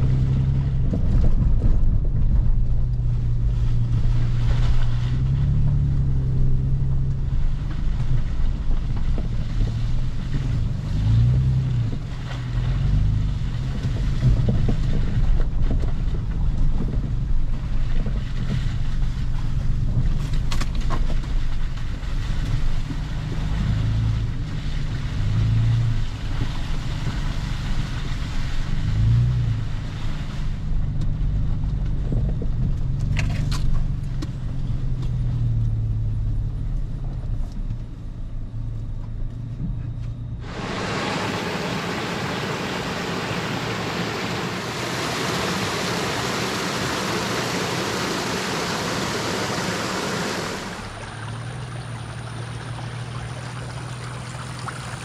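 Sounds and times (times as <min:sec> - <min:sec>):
low wavering rumble: 0:00.0 - 0:55.0
heavy rain pouring: 0:40.4 - 0:53.4.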